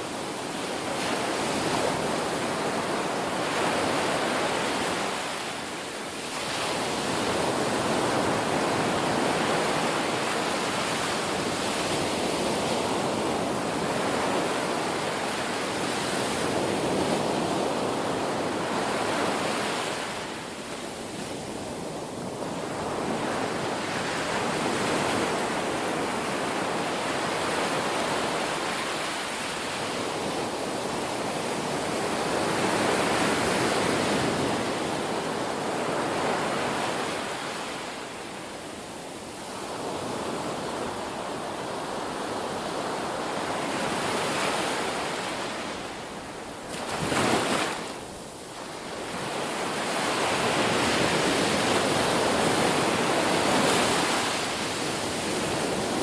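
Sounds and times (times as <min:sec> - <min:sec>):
ocean waves breaking on shore: 0:00.0 - 0:56.0.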